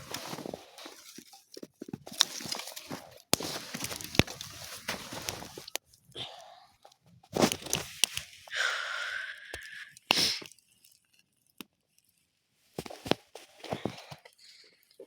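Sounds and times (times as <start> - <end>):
crunching and rustling handling: 0.0 - 6.0, 7.2 - 8.5.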